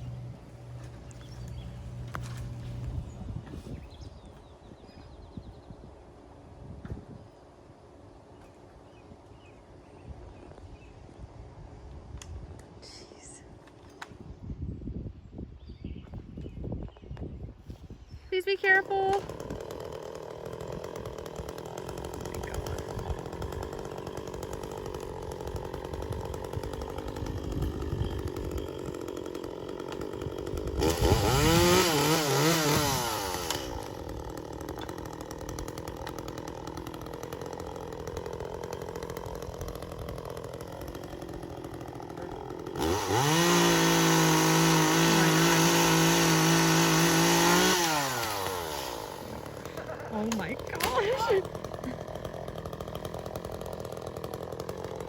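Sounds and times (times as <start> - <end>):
chainsaw idling and revving: 0.0 - 3.1, 18.4 - 55.0.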